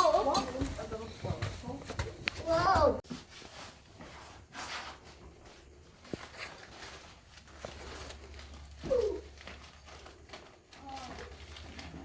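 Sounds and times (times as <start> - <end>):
faint scuffing footsteps: 0.1 - 8.0.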